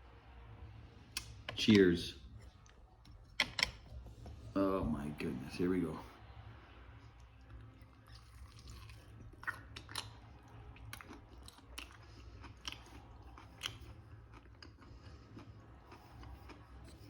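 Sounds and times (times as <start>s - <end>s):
person chewing: 7.3s - 17.0s.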